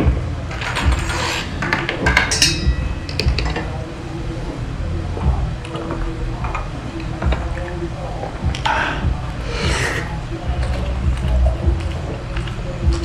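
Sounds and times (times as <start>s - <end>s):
cutlery and dishes clinking: 0.6s - 3.6s.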